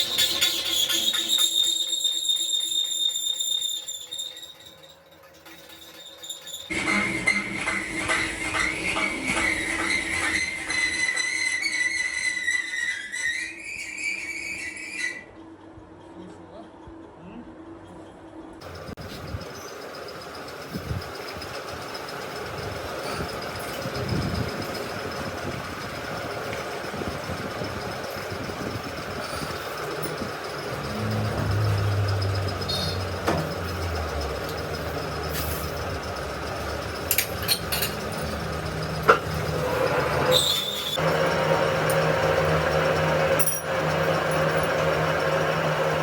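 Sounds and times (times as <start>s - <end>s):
motor humming: 18.6s - 46.0s.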